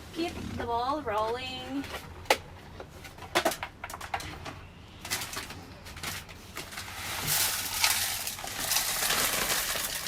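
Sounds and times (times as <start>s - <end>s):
birdseed pouring: 6.8s - 10.0s.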